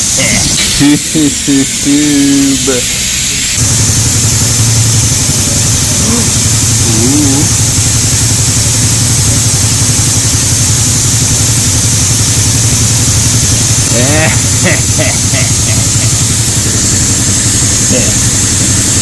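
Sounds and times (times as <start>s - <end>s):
suction tool humming and hissing: 0.0s - 19.0s.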